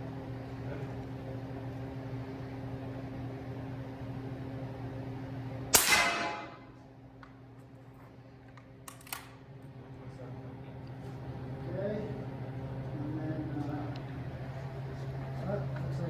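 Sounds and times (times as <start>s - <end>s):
low hum: 5.7s - 7.0s
suppressed rifle shot: 5.8s - 6.6s.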